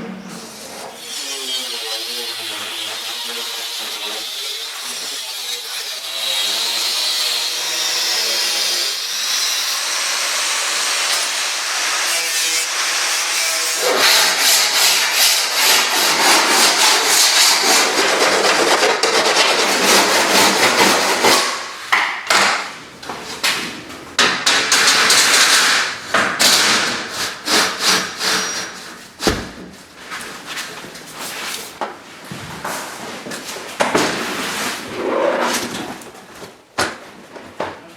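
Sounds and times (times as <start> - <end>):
saw rasping through wood: 0.6 - 21.8, 24.7 - 29.4.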